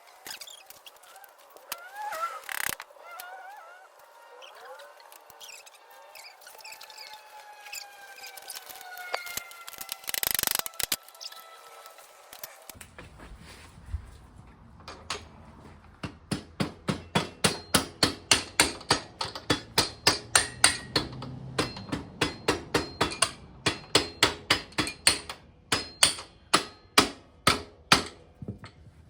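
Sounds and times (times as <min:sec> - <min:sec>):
hammer striking metal: 0:16.0 - 0:28.3.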